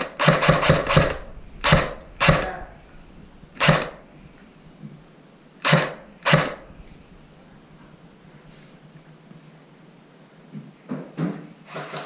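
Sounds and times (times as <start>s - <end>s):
airsoft gun shots: 0.0s - 2.6s, 3.6s - 4.1s, 5.6s - 6.9s.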